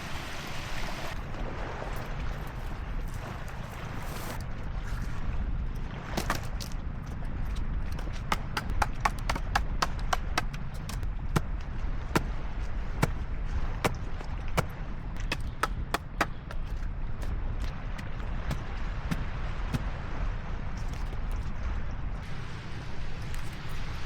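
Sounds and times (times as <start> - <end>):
steady low rumble: 1.1 - 24.0
sharp knocks or chops: 8.3 - 11.5, 14.6 - 16.6.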